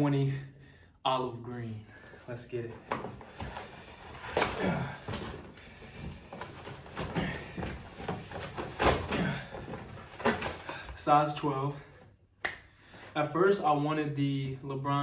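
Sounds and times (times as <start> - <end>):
cardboard box rustling and scraping: 2.6 - 10.8.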